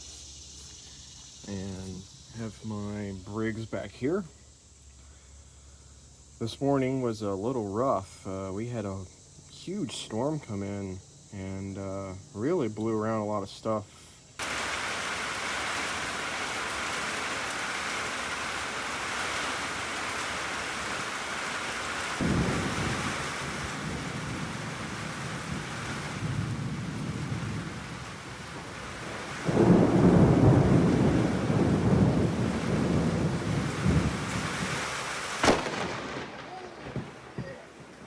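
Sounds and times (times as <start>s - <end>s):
steady rain falling: 0.0s - 38.0s
thunder rumbling: 21.9s - 38.0s.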